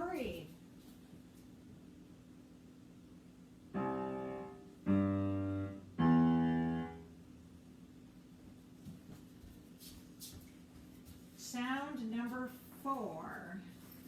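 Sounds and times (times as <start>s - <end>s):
piano notes: 3.7s - 7.3s.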